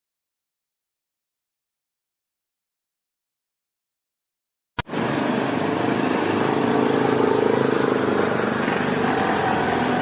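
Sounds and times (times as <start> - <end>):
vehicle engine running: 4.8 - 10.0.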